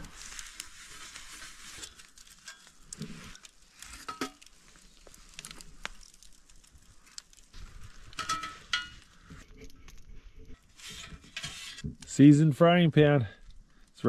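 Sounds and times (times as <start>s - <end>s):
oil sizzling on griddle: 0.0s - 9.6s.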